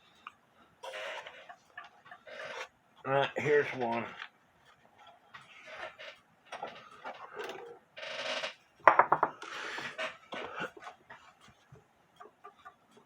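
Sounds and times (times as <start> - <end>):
clicks and scrapes of small parts: 0.2 - 2.8.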